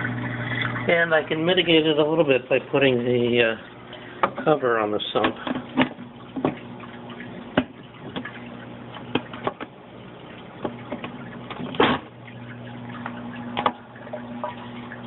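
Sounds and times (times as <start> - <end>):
pump buzzing: 0.0 - 15.0
water trickling: 0.0 - 15.0
drips and ticks: 3.6 - 15.0.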